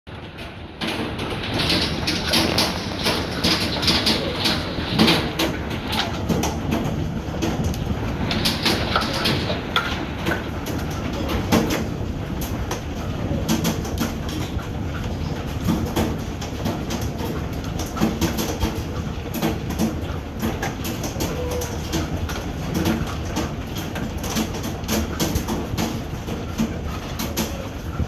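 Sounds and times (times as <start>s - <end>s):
steady rumble: 0.1s - 21.2s
hailstones clattering: 0.1s - 28.0s.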